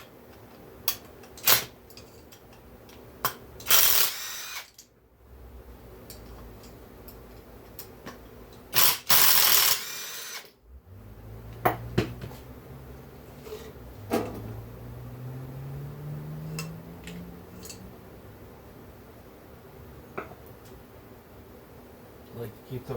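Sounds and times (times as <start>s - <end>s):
power drill burst: 3.6s - 4.8s, 8.7s - 10.6s.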